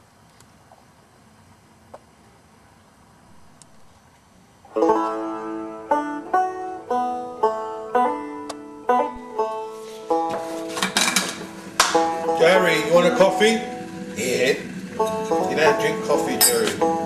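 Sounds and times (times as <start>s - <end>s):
plucked string tune: 4.7s - 17.0s.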